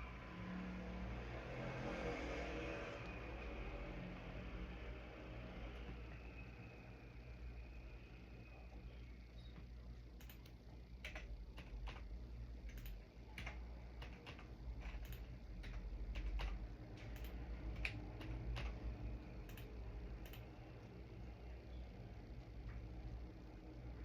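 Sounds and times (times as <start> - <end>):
faint low hum: 0.0 - 24.0
keyboard keys clicking: 10.2 - 18.8, 19.5 - 20.5.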